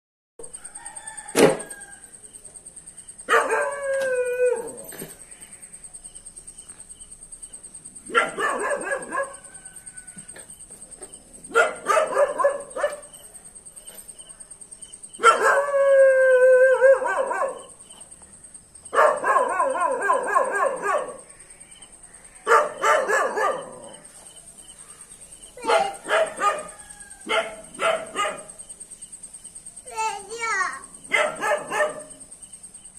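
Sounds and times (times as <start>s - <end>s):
dog barking and howling: 3.3s - 5.0s, 8.0s - 9.9s, 11.5s - 13.3s, 15.2s - 18.1s, 18.9s - 21.3s, 22.4s - 24.1s, 25.6s - 28.7s, 31.0s - 32.3s.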